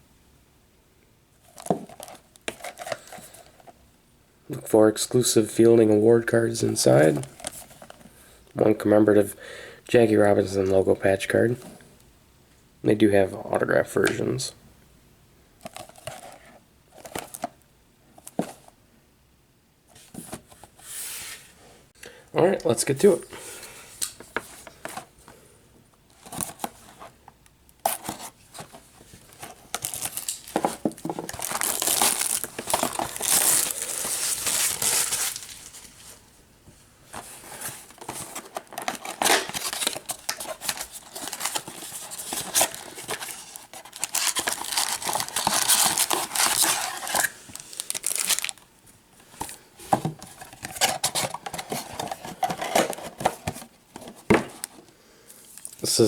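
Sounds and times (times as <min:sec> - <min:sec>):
plastic wrapping crinkling: 0:27.9 - 0:36.3, 0:37.2 - 0:48.7, 0:55.4 - 0:56.0.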